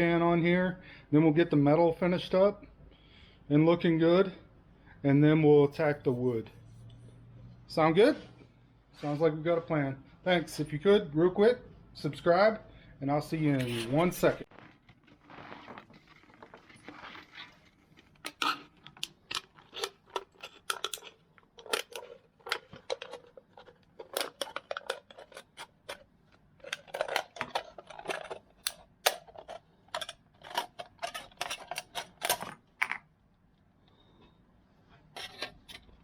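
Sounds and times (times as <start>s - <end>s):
aluminum can crinkling and clicking: 15.7s - 33.1s.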